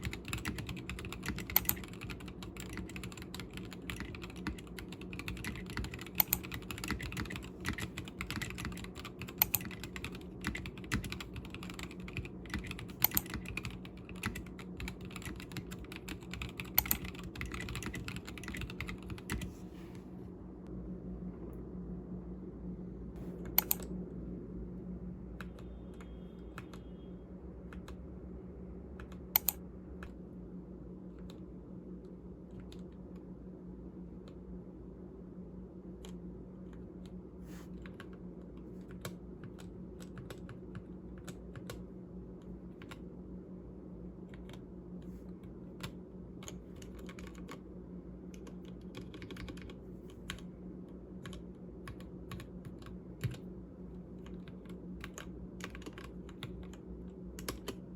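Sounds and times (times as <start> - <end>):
mechanical keyboard typing: 0.0 - 19.5, 23.5 - 23.9, 29.0 - 29.6, 37.8 - 41.9, 42.7 - 43.0, 45.3 - 47.6, 48.3 - 50.5, 51.2 - 53.5, 54.2 - 57.8
low hum: 0.0 - 57.9.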